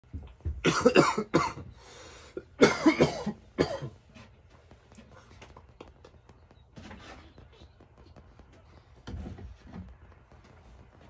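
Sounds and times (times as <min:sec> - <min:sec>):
person coughing: 0:00.6 - 0:01.7, 0:02.4 - 0:04.0.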